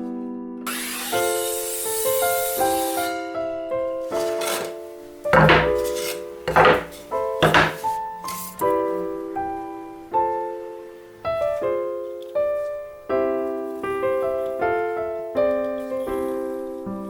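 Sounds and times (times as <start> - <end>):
piano chords ringing: 3.0 - 17.0.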